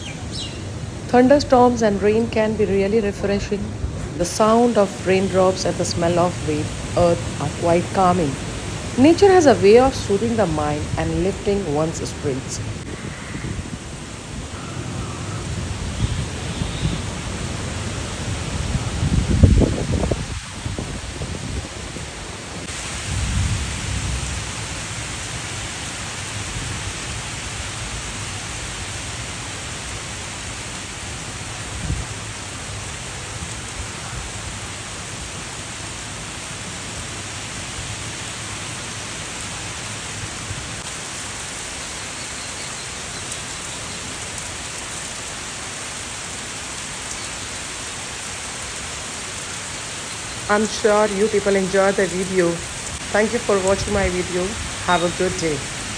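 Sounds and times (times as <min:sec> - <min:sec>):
steady rain falling: 0:00.0 - 0:55.9
thunder rolling: 0:02.6 - 0:25.7.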